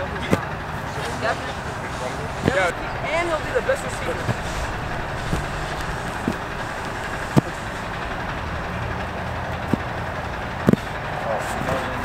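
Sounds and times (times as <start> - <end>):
traffic-like rumble: 0.0 - 12.0
short sharp thumps: 2.3 - 8.2, 10.6 - 10.9.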